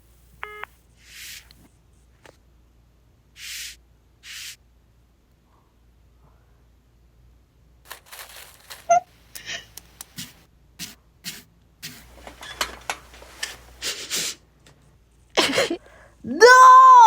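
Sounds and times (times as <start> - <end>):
person sobbing: 15.4 - 17.0.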